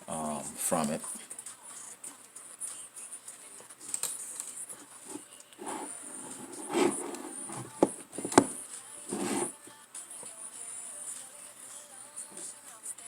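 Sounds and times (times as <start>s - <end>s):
handling rustling: 5.0s - 9.5s.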